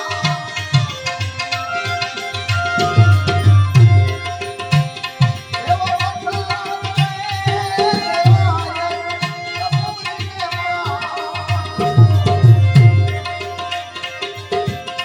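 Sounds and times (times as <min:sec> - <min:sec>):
wavering melody line: 0:00.0 - 0:05.5
tabla beating: 0:00.0 - 0:15.0.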